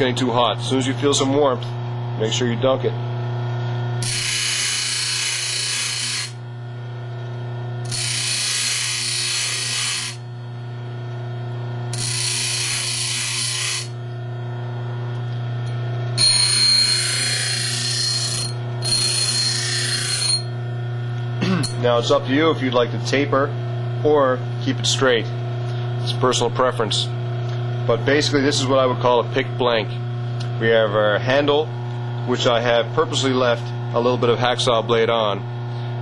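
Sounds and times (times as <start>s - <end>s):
bench grinder motor running: 0.0s - 36.0s
metal blade grinding on wheel: 4.0s - 6.4s, 7.8s - 10.3s, 11.9s - 14.0s, 16.2s - 20.5s.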